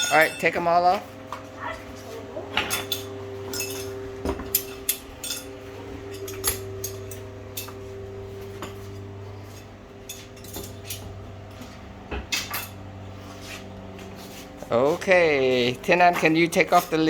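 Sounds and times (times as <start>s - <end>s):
steady low hum: 0.0s - 17.0s
metal clips clinking: 2.7s - 5.5s, 6.1s - 7.8s.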